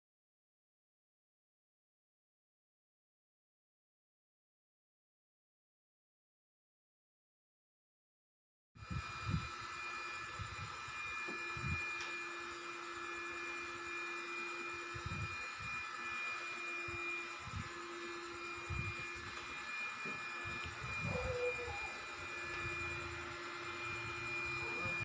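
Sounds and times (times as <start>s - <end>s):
handheld vacuum motor whine: 8.8s - 25.0s.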